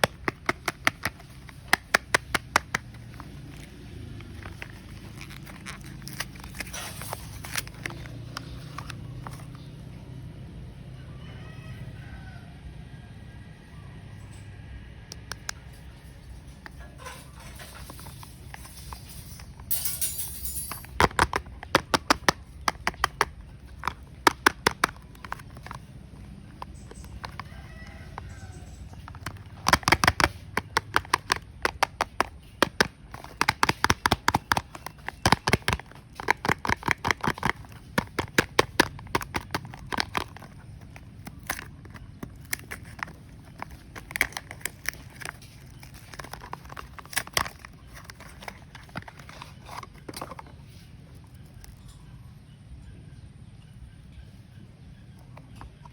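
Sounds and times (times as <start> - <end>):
soap packaging crackling: 0.0 - 9.8, 17.6 - 19.7, 20.7 - 51.8.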